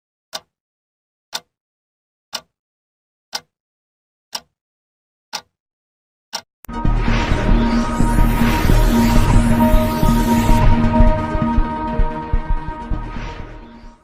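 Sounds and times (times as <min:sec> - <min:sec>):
music: 0:06.7 - 0:14.0.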